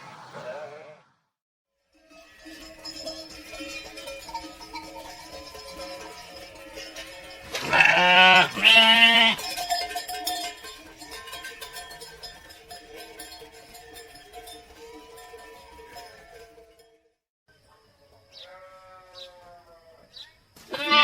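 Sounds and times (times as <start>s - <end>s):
sheep bleating: 6.6s - 9.4s, 18.4s - 20.1s, 20.7s - 21.0s.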